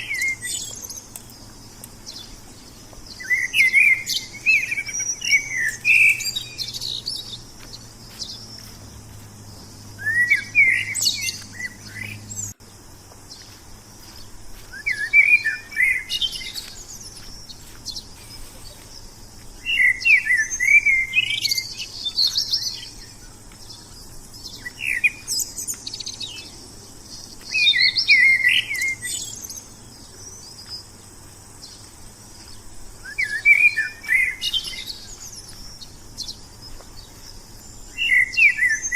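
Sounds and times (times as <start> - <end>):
high bird chirps: 0.0 - 8.9, 10.0 - 12.6, 13.4 - 30.8
songbird singing warbled phrases: 0.0 - 12.6, 13.3 - 31.0, 31.6 - 38.9
steady high hiss: 0.0 - 38.9.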